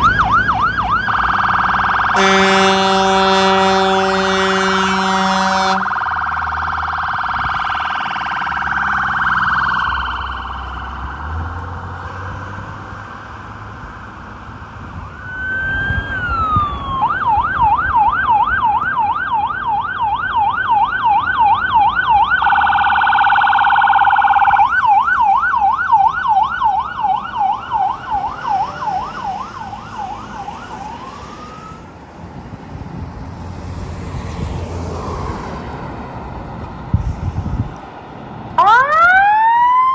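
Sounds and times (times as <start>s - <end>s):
fire truck siren yelping: 0.0s - 32.1s, 38.6s - 39.9s
air horn blast: 2.0s - 6.2s.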